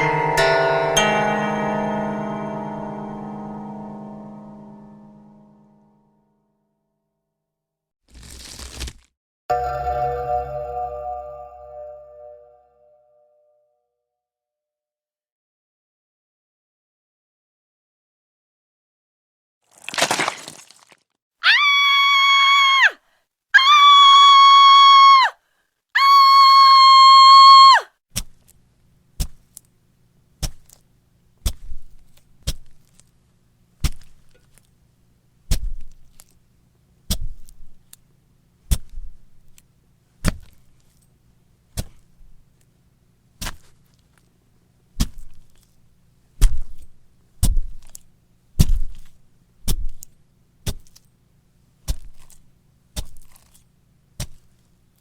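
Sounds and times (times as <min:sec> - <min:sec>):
long high-pitched screams: 0:21.4 - 0:23.0, 0:23.6 - 0:25.4, 0:26.0 - 0:27.9.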